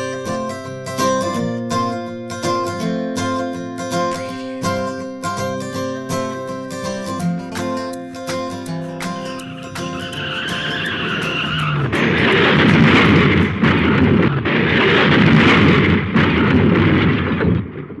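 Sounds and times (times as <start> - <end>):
acoustic guitar music: 0.0 - 16.9
car tyres screeching: 9.4 - 13.6.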